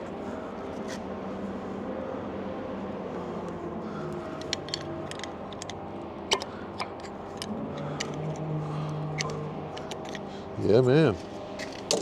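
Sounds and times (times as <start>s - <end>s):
steady low hum: 0.0s - 12.0s
metallic clicks of tools: 4.4s - 10.3s.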